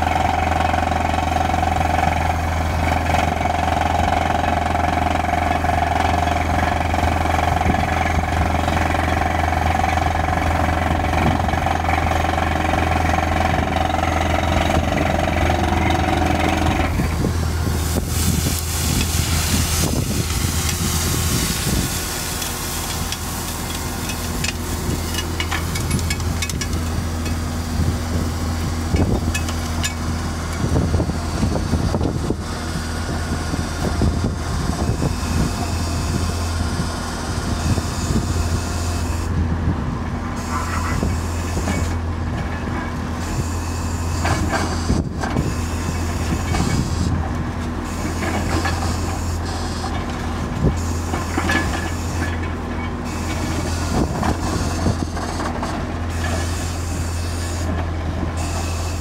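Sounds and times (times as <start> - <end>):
drilling knocks and clatter: 0.0 - 32.4
low engine drone: 0.0 - 59.0.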